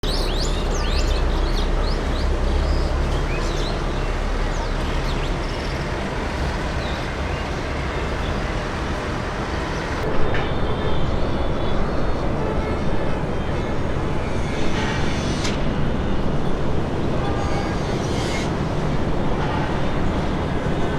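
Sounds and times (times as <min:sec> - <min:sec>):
birds chirping: 0:00.0 - 0:10.0
low rumble of distant engines: 0:00.0 - 0:20.9.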